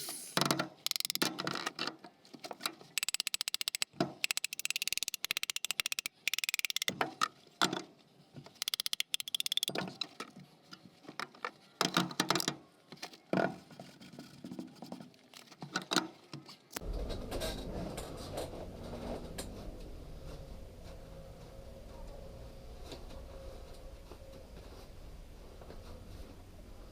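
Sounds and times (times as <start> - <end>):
rapid clicking: 0.8 - 1.3, 3.0 - 6.9, 8.6 - 9.7
steady low hum: 16.8 - 26.9.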